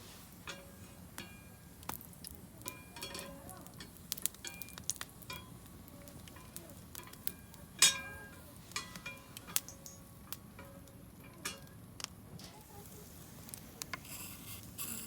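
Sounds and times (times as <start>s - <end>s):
metal utensils clinking on cookware: 0.4s - 1.5s, 2.7s - 11.8s.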